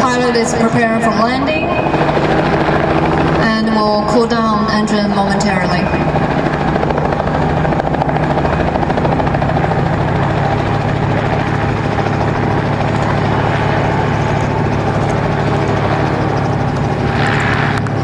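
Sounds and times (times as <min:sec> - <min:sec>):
helicopter engine and rotors humming: 0:00.0 - 0:18.0.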